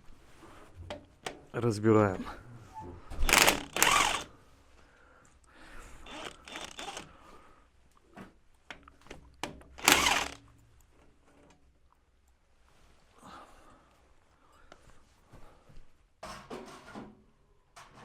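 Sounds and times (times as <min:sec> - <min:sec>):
metallic clicks and knocks: 0:03.3 - 0:04.3
tool rasping: 0:03.3 - 0:04.3, 0:06.1 - 0:07.1, 0:09.8 - 0:10.4.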